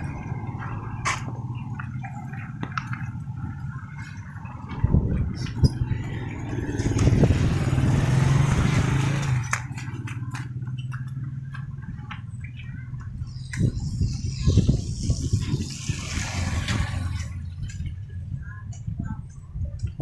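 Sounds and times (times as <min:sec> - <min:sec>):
vehicle engine humming: 0:00.0 - 0:20.0.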